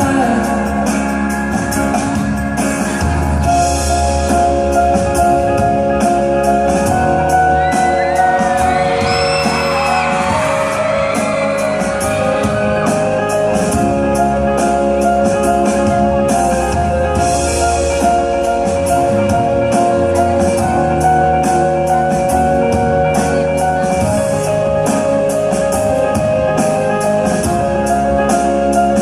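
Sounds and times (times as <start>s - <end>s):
pop ballad sustained chords: 0.0s - 29.0s
steady drum beat: 0.0s - 29.0s
audience shouts and whoops: 7.4s - 13.2s.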